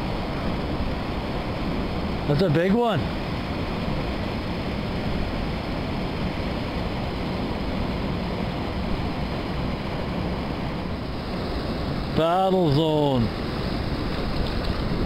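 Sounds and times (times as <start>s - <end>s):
river water rushing: 0.0s - 15.0s
wind buffeting microphone: 12.9s - 15.0s.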